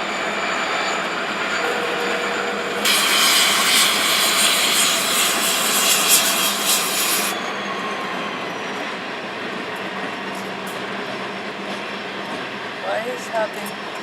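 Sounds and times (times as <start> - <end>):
train rumble: 0.0 - 14.0
compressed air venting hiss: 2.8 - 7.3.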